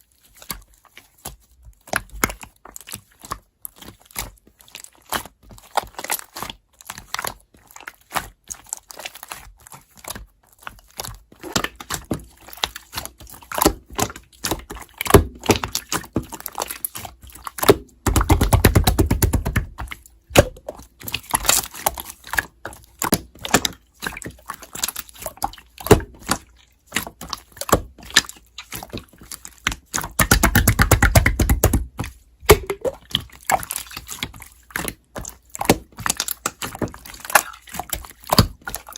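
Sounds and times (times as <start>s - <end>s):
slime squished by hand: 0.1s - 38.9s.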